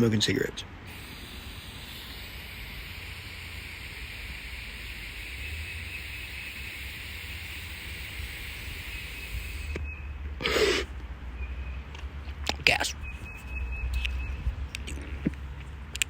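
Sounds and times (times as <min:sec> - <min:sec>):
vape pen inhale hiss: 0:00.9 - 0:09.8.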